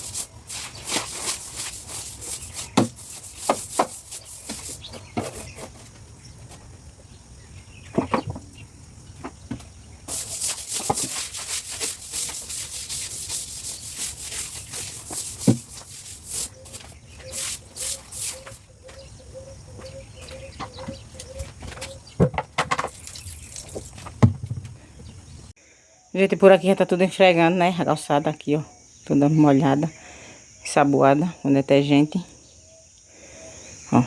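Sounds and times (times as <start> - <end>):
scrubbing wet sidewalk: 0.0 - 5.4, 10.1 - 18.6.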